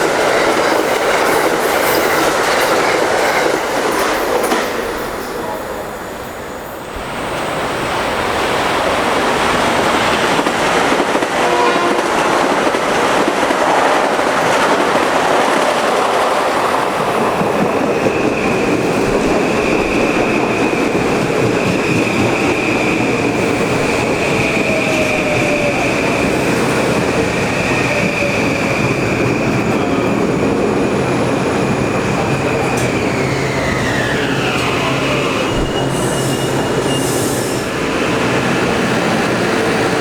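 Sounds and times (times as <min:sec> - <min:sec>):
train wheels rushing on rail: 0:00.0 - 0:40.0
train horn: 0:11.3 - 0:12.4.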